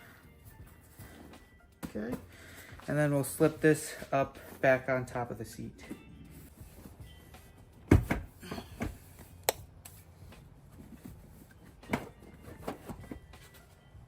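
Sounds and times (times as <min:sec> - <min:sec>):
dull thumps and knocks: 0:07.9 - 0:09.0.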